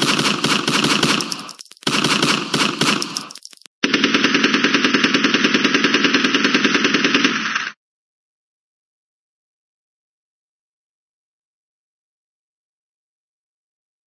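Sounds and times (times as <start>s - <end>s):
machine-gun fire: 0.0s - 7.8s.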